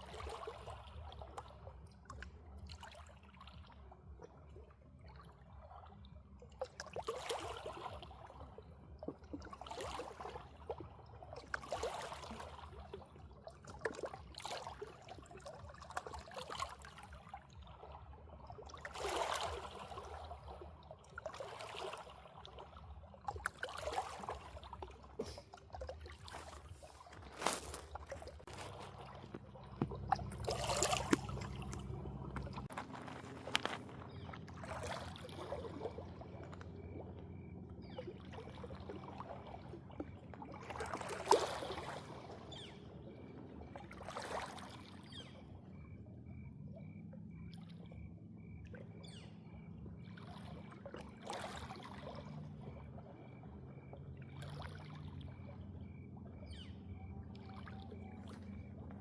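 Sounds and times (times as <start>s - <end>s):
water splashing and sloshing: 0.0s - 59.0s
steady low hum: 24.9s - 40.2s.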